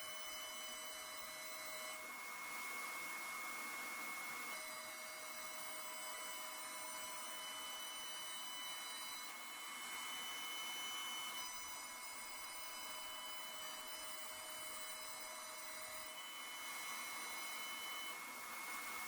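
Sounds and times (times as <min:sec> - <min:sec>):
cnc router hiss: 0:00.0 - 0:19.0
high whining motor tones: 0:04.4 - 0:19.0.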